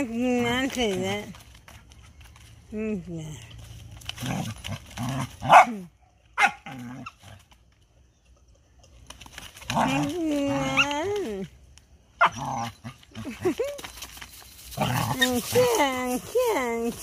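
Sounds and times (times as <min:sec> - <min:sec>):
dog barking: 0:05.4 - 0:05.8, 0:06.4 - 0:06.7.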